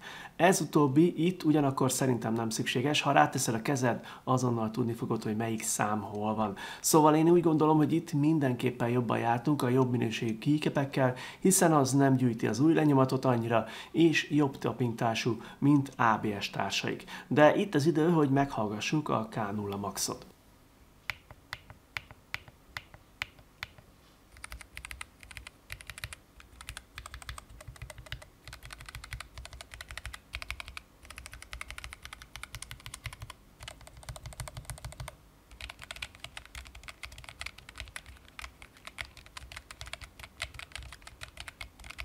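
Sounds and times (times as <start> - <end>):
keyboard typing: 21.1 - 42.0.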